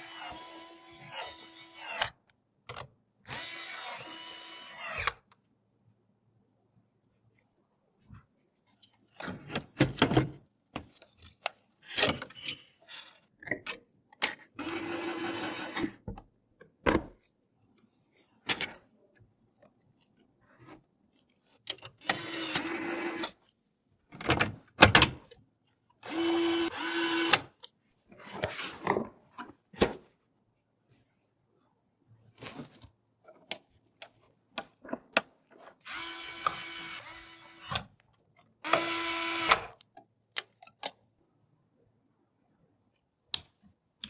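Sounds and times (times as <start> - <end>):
electric screwdriver whirring: 26.0 - 27.4, 35.8 - 37.8, 38.6 - 39.7.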